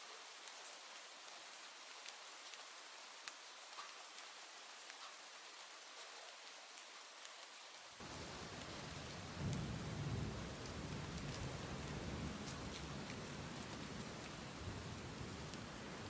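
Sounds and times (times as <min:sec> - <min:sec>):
steady rain: 0:00.0 - 0:16.0
raindrops crackling on a surface: 0:00.2 - 0:16.0
distant thunder rumble: 0:08.0 - 0:16.0.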